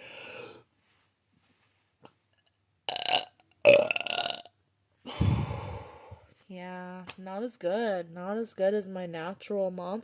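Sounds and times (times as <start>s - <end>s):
woman belching: 2.9s - 4.5s.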